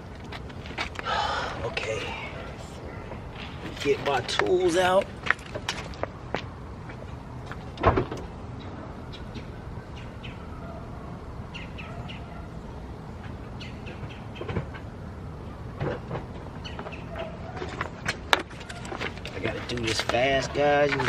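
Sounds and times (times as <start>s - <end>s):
steady low hum: 0.0s - 21.0s
small birds chirping: 8.5s - 10.6s, 11.4s - 14.6s, 16.5s - 17.5s.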